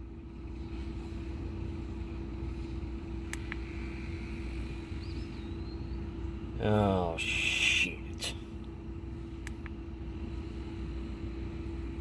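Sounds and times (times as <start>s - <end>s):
car engine idling: 0.0s - 12.0s
sharp clicks: 3.3s - 3.7s, 9.4s - 9.8s.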